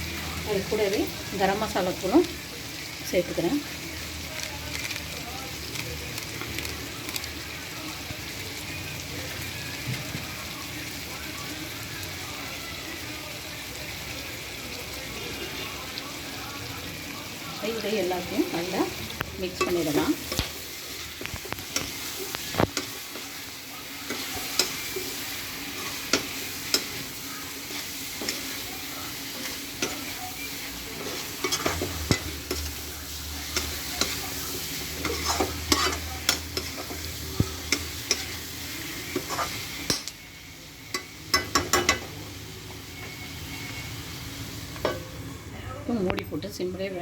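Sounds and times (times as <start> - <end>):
food sizzling in oil: 0.0 - 47.0
spoon stirring and scraping: 19.6 - 40.2.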